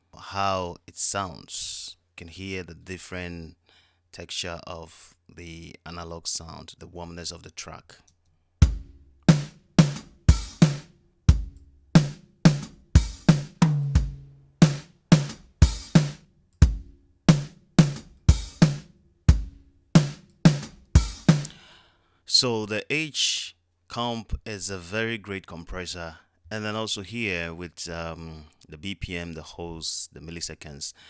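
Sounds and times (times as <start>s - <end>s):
drum kit groove: 8.6s - 21.6s.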